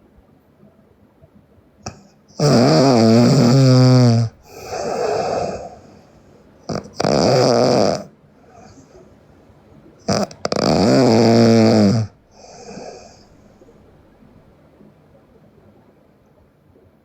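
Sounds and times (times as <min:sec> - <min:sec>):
person snoring loudly: 0:01.9 - 0:05.8, 0:06.7 - 0:08.1, 0:10.1 - 0:13.2
breathy exhale: 0:04.4 - 0:06.5, 0:08.4 - 0:09.1, 0:12.3 - 0:13.8.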